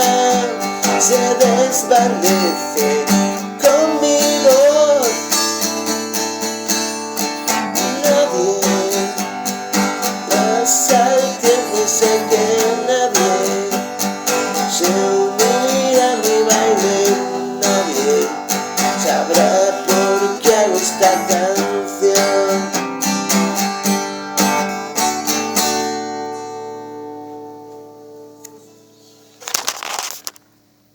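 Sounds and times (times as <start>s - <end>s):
guitar chord ringing: 0.0s - 29.1s
acoustic guitar strumming: 0.0s - 30.2s.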